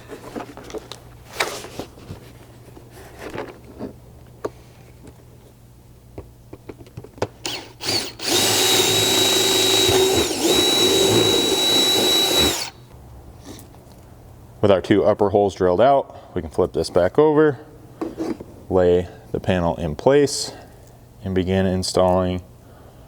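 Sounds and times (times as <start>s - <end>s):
power drill whining: 7.4s - 12.8s.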